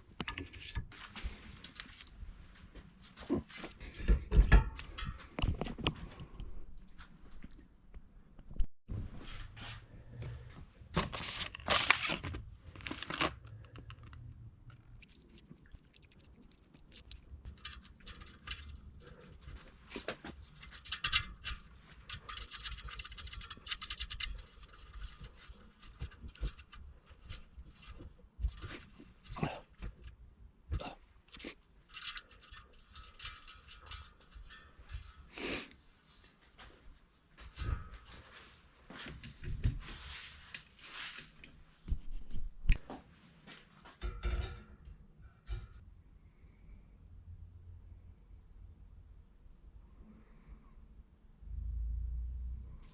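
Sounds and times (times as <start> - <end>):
rustling: 8.9 - 42.4.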